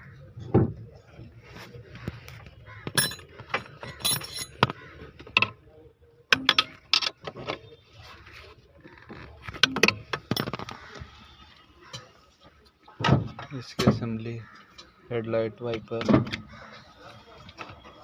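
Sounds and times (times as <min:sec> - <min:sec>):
tools and metal parts clinking: 0:02.9 - 0:05.6, 0:06.3 - 0:07.4, 0:09.2 - 0:10.7.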